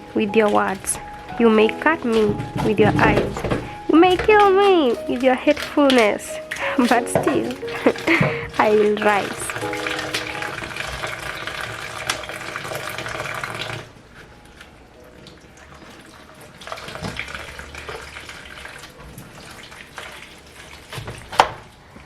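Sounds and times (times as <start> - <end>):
background music: 0.0 - 16.6
tap water running into sink: 0.4 - 13.9, 15.3 - 21.6.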